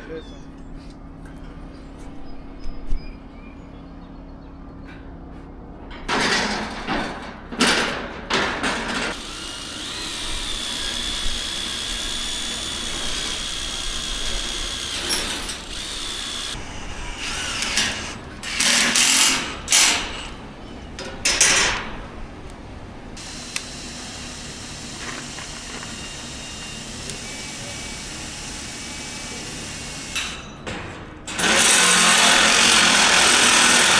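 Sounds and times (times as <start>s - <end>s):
power tool bursts and whine: 8.9s - 20.9s, 23.2s - 30.6s, 31.3s - 33.9s.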